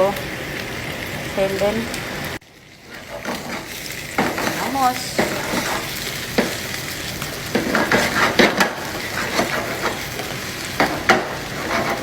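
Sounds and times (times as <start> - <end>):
food sizzling in a pan: 0.0 - 12.0
utensil scraping and knocking pan: 2.9 - 6.6, 7.5 - 12.0.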